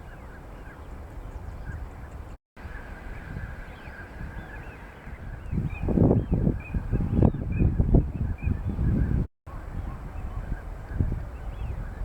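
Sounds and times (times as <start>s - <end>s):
wind buffeting microphone: 0.0s - 12.0s.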